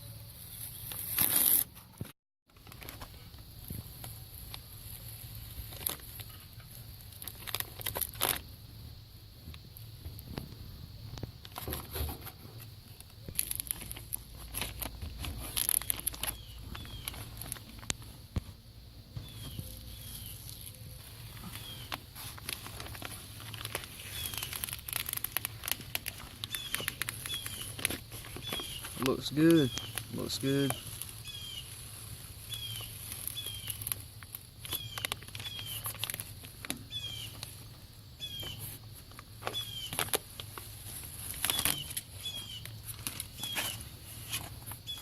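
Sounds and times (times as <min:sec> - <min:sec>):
rustling and crackling: 0:00.4 - 0:45.0
bird chirping: 0:16.2 - 0:17.4, 0:19.1 - 0:22.1, 0:23.9 - 0:24.8, 0:26.3 - 0:34.0, 0:34.6 - 0:36.0, 0:36.8 - 0:37.5, 0:38.2 - 0:38.8, 0:39.5 - 0:40.0, 0:41.5 - 0:43.9, 0:44.8 - 0:45.0
footsteps through dry leaves: 0:19.2 - 0:37.6, 0:38.2 - 0:45.0.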